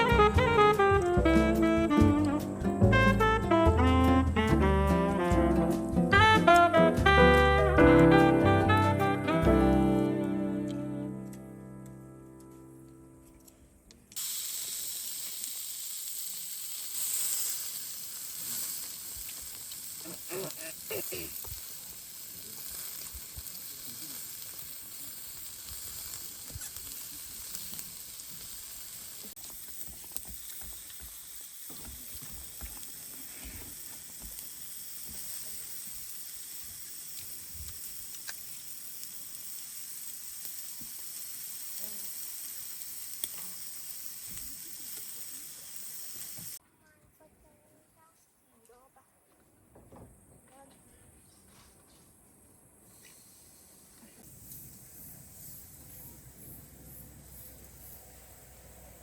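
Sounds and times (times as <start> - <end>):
faint crackles: 10.2 - 46.6
meat sizzling on a grill: 14.1 - 46.6, 52.9 - 59.0.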